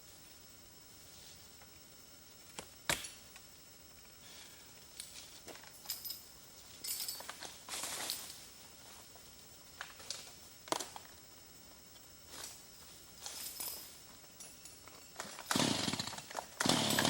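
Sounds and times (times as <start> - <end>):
rustle: 0.0 - 3.2, 4.8 - 17.0
light clinks: 5.0 - 8.4, 13.2 - 15.4.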